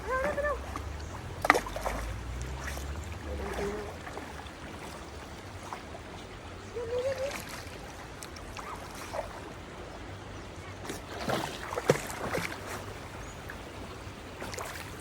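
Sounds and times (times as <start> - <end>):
faint wavering calls: 0.0 - 4.2, 6.6 - 7.6
stream water running: 0.0 - 15.0.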